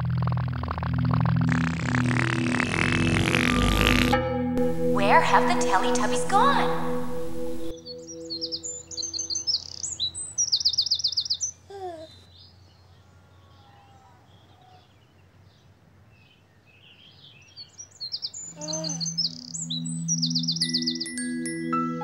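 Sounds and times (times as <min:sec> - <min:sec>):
birds chirping and trilling: 0:00.4 - 0:22.0
soft sustained musical notes: 0:00.7 - 0:10.4, 0:19.0 - 0:22.0.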